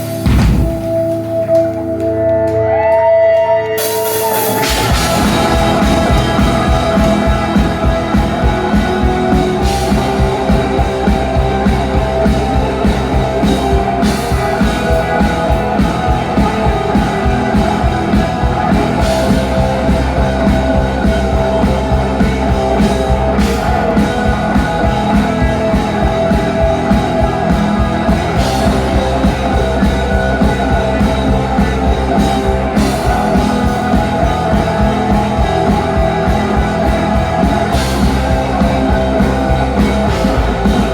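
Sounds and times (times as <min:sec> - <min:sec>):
rock band playing: 0:00.0 - 0:40.9.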